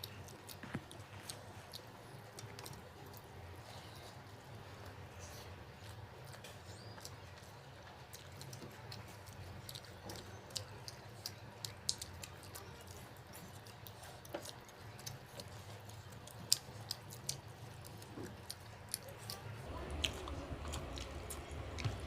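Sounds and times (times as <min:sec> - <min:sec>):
soft chewing: 0:00.0 - 0:22.0
steady low hum: 0:16.1 - 0:22.0.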